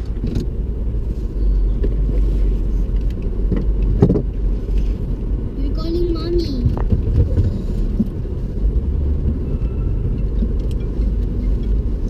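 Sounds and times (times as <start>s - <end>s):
moving car rumble: 0.0s - 12.0s.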